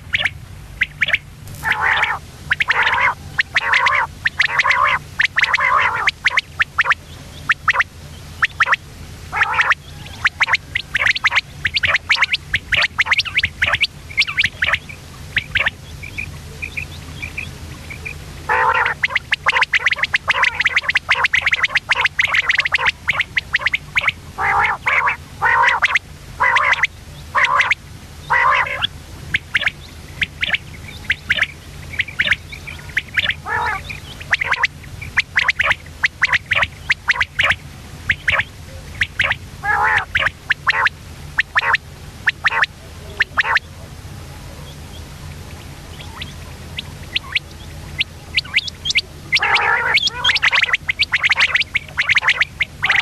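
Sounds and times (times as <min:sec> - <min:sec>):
soft chirps: 0:00.0 - 0:24.8, 0:25.7 - 0:43.7, 0:44.6 - 0:53.0
quail calling: 0:00.0 - 0:43.7, 0:44.6 - 0:53.0
steady low hum: 0:00.0 - 0:53.0.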